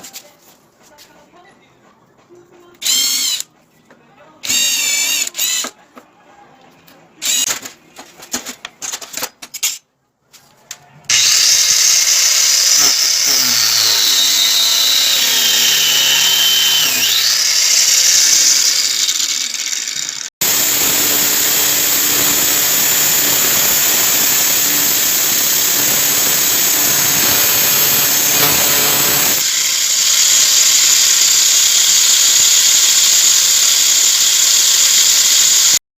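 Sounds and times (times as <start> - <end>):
angle grinder running: 11.1 - 35.8.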